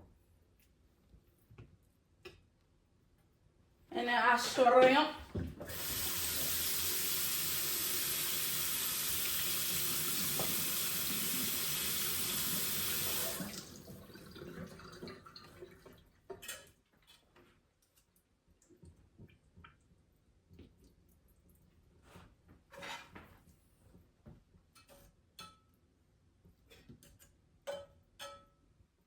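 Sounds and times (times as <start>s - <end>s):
tap water running: 4.6s - 16.5s.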